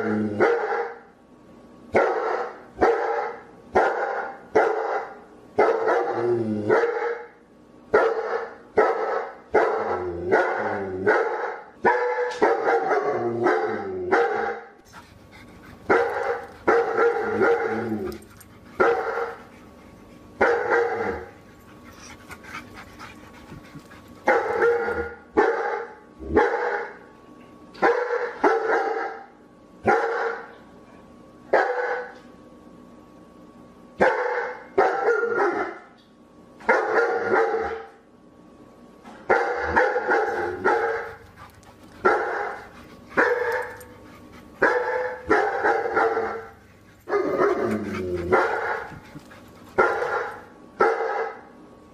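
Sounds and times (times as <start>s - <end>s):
dog barking: 0.4s - 1.0s, 2.0s - 7.3s, 8.0s - 14.7s, 15.9s - 17.9s, 18.8s - 19.4s, 20.4s - 21.4s, 24.2s - 27.0s, 27.8s - 30.5s, 31.5s - 32.2s, 34.0s - 35.9s, 36.6s - 38.0s, 39.3s - 41.2s, 42.0s - 43.9s, 44.6s - 49.0s, 49.8s - 51.5s.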